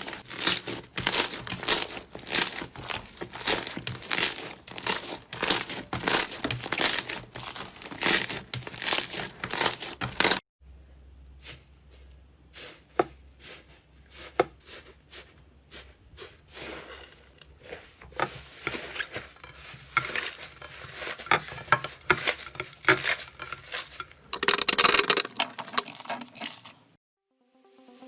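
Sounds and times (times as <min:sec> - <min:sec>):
slime crackling: 0:00.0 - 0:10.4.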